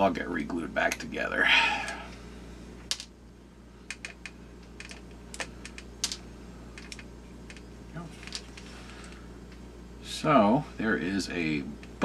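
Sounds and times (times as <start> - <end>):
small plastic parts clicking: 6.8 - 7.6.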